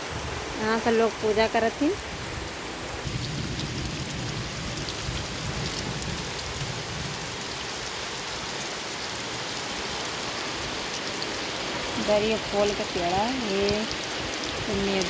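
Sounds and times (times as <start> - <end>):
heavy rain hissing: 0.0 - 15.0
raindrop ticks: 3.0 - 7.9, 10.8 - 15.0.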